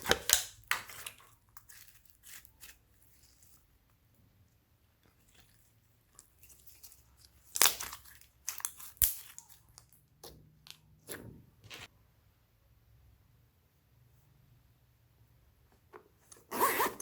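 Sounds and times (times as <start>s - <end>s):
slime squished by hand: 6.2s - 11.2s.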